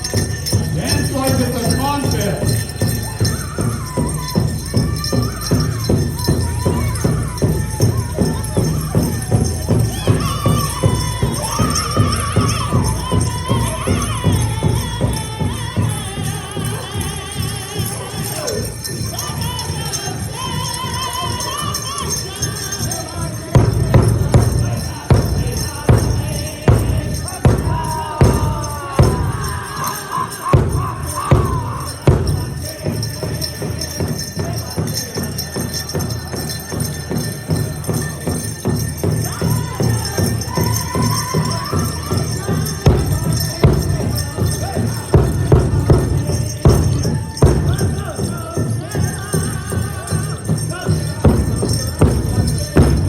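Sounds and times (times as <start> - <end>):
big drum beating: 0.0 - 53.0
group singing high vocals: 0.0 - 53.0
jingling: 0.0 - 53.0.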